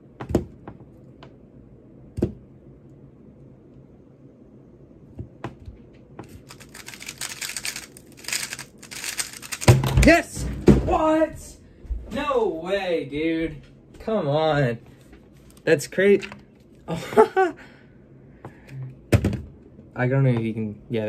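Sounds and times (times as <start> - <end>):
puzzle cube turning clicks: 6.3 - 9.7.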